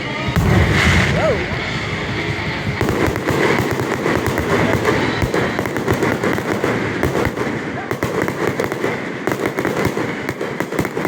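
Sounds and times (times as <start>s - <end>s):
fireworks popping and banging: 0.0s - 11.0s.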